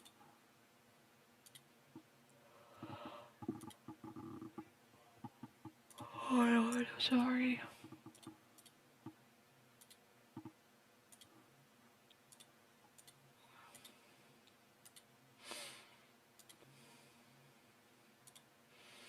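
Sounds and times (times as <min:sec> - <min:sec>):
computer mouse clicks: 0:01.4 - 0:01.7, 0:02.8 - 0:04.6, 0:05.2 - 0:06.1, 0:07.8 - 0:08.8, 0:09.8 - 0:11.4, 0:12.1 - 0:15.1, 0:16.4 - 0:16.7, 0:18.2 - 0:18.5
short breath-like hiss: 0:15.4 - 0:16.0.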